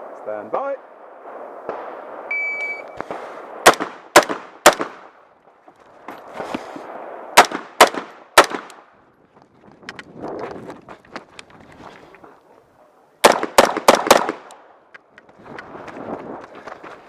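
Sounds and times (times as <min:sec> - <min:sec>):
rifle shots: 0:01.3 - 0:05.2, 0:06.9 - 0:08.9, 0:13.2 - 0:14.6
shot timer beep: 0:02.3 - 0:03.0.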